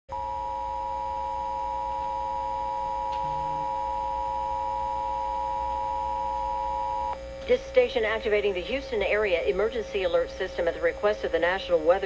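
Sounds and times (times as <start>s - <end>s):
two-tone alert alarm: 1.4s - 7.1s.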